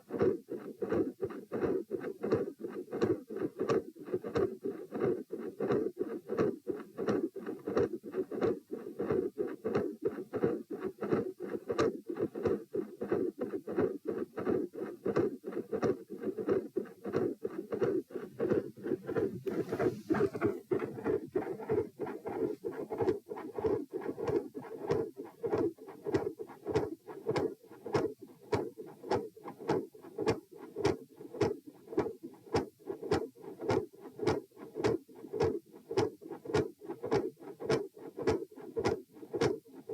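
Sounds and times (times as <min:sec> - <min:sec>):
heartbeats: 0:13.7 - 0:39.6.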